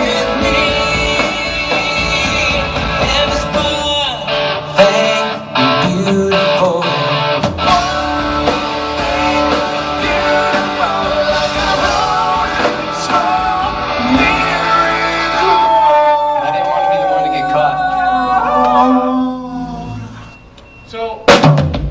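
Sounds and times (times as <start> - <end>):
person singing: 0.0 - 16.5
live rock band playing: 0.0 - 17.2.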